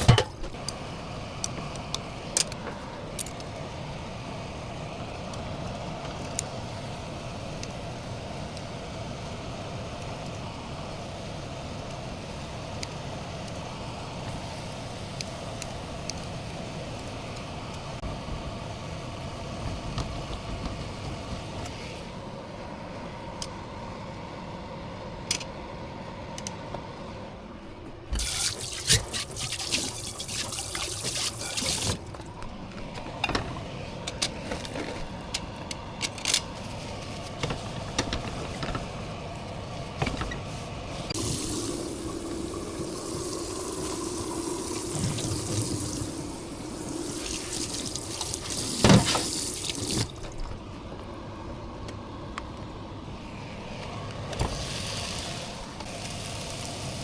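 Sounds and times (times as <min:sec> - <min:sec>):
steady hum: 0:00.0 - 0:54.6
kitchen tap running: 0:28.2 - 0:32.4, 0:41.2 - 0:50.6.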